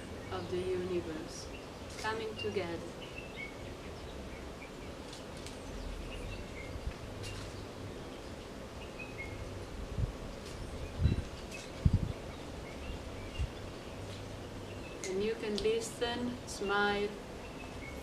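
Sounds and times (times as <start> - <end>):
outdoor background noise: 0.0 - 18.0
dull low thumps: 10.8 - 12.2.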